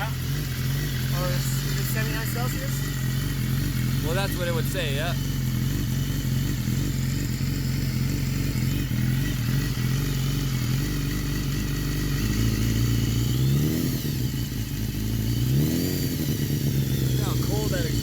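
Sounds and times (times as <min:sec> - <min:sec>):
motorcycle engine idling and revving: 0:00.0 - 0:18.0.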